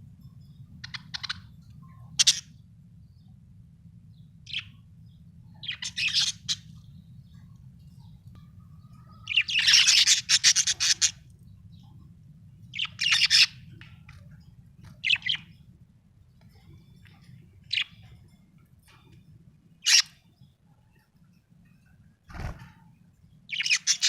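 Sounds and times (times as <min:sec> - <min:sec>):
budgerigar chirping: 0:09.3 - 0:11.2.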